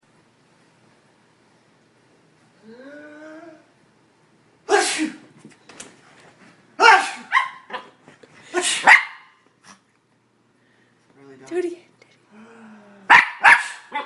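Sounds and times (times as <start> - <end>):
person sneezing: 4.7 - 5.2, 6.8 - 7.3, 8.5 - 8.9
dog barking: 6.8 - 7.9, 8.8 - 9.4, 13.1 - 14.0.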